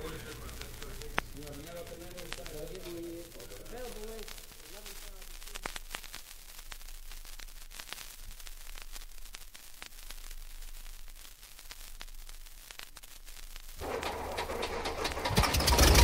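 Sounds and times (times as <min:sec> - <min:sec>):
vinyl record crackle and hiss: 0:00.0 - 0:16.0.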